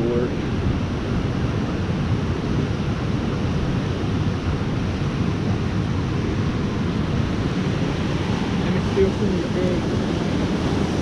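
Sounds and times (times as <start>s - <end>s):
creek water running over rocks: 4.4s - 11.0s.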